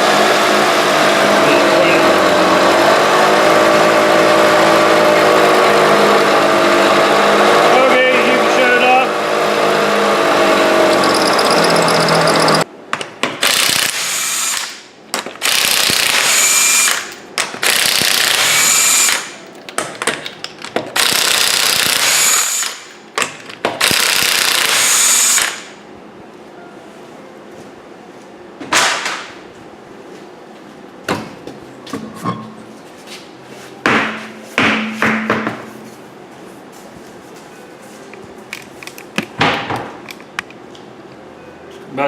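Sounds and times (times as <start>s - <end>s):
pneumatic impact wrench bursts: 13.4s - 19.4s, 21.0s - 22.9s, 23.8s - 25.8s.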